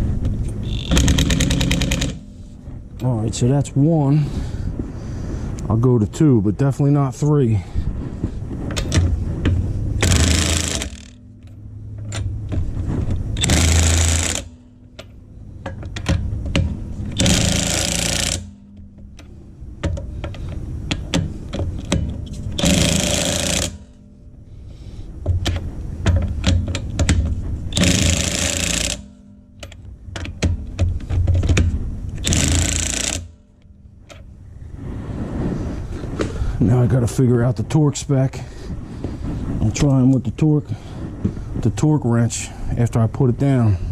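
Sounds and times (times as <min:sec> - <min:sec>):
impact wrench rattling bursts: 0:00.0 - 0:02.5, 0:08.7 - 0:24.1, 0:25.3 - 0:34.2.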